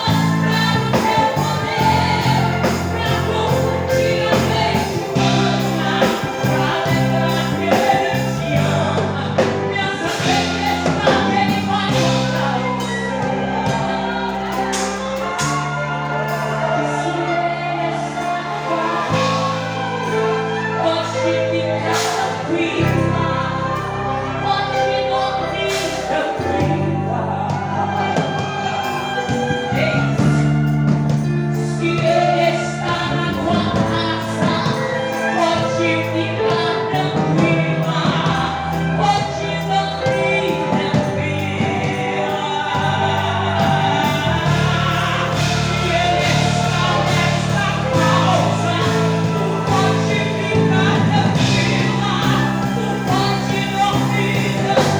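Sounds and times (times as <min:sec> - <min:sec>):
group singing a gospel hymn: 0:00.0 - 0:54.9
held bass line: 0:00.0 - 0:54.9
instrumental accompaniment: 0:00.0 - 0:54.9.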